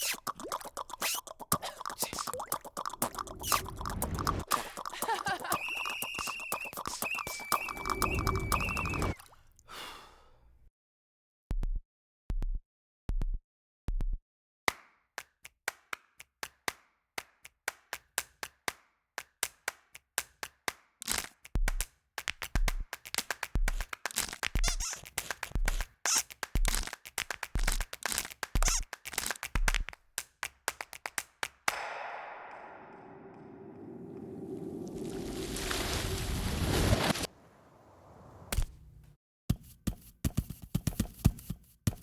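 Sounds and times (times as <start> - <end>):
sharp clicks and claps: 2.0 - 9.2, 14.7 - 34.3.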